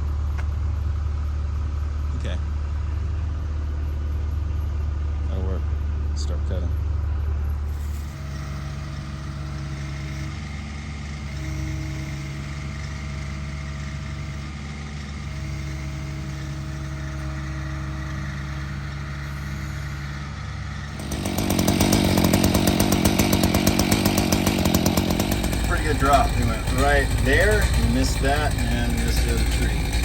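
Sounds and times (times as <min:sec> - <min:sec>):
engine humming: 0:00.0 - 0:30.0
chainsaw cutting tree trunk: 0:07.6 - 0:30.0.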